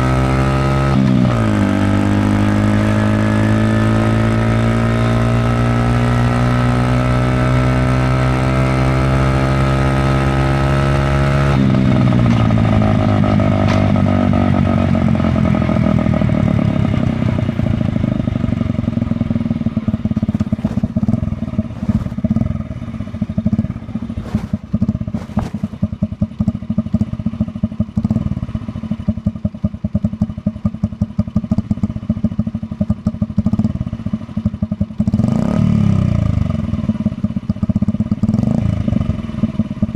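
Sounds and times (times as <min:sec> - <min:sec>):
motorcycle engine: 0:00.0 - 0:39.9.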